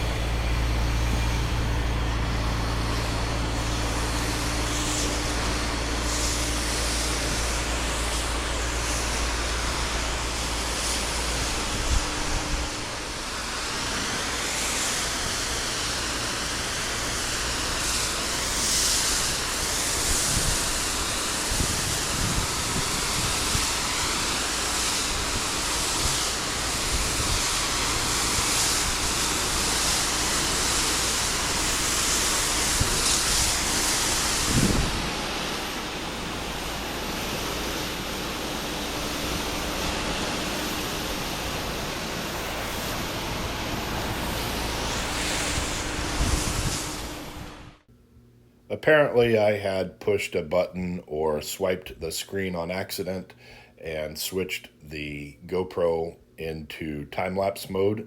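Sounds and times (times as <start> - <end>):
engine hum: 0.0 - 17.2
water spray hissing: 0.0 - 47.4.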